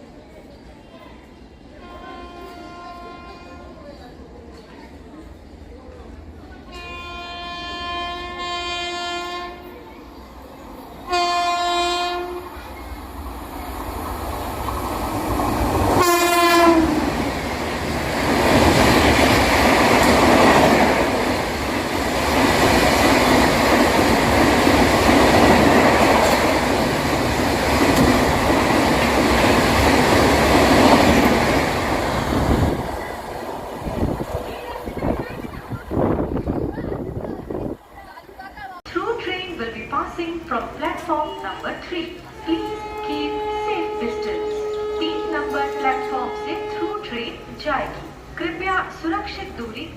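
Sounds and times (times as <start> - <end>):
train coaches rumbling past: 0.0 - 49.9
locomotive horn blasts: 1.8 - 3.6, 6.7 - 9.7, 11.1 - 12.5, 16.0 - 17.2, 42.4 - 47.6.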